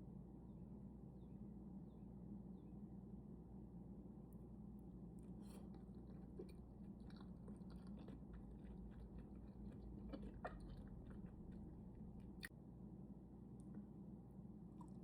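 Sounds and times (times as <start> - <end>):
low steady hum: 0.0 - 15.0
chewing with wet mouth clicks: 5.2 - 12.5, 14.7 - 15.0.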